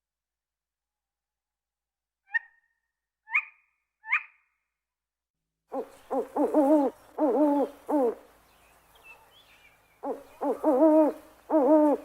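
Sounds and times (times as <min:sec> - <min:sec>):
owl high calls: 0:05.7 - 0:08.3, 0:10.0 - 0:12.0
owl hooting: 0:05.7 - 0:08.3, 0:10.0 - 0:12.0.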